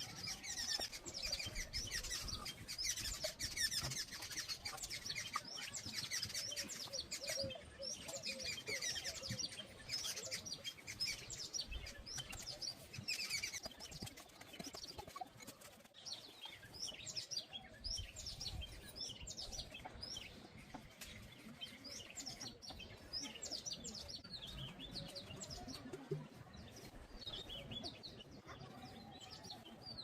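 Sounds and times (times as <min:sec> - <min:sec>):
small birds chirping: 0:00.0 - 0:30.0.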